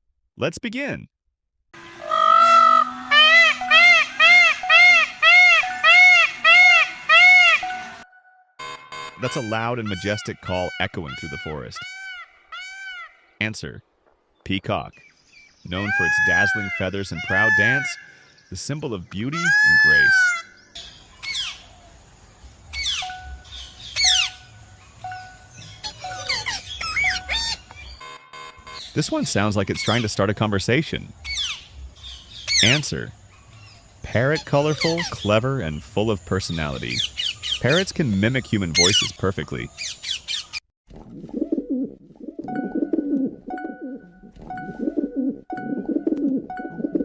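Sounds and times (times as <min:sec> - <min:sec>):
parrot squawking: 0:02.0 - 0:07.9, 0:09.0 - 0:13.2, 0:15.7 - 0:18.1, 0:19.3 - 0:20.6, 0:23.8 - 0:24.4, 0:25.7 - 0:28.0, 0:32.5 - 0:32.8, 0:34.3 - 0:35.3
pigeon cooing: 0:41.3 - 0:47.0.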